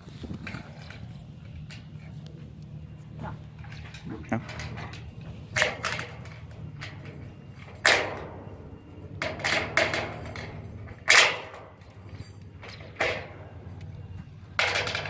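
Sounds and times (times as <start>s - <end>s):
metallic clanks of steel parts: 0.0s - 15.0s
steady low hum: 0.0s - 15.0s.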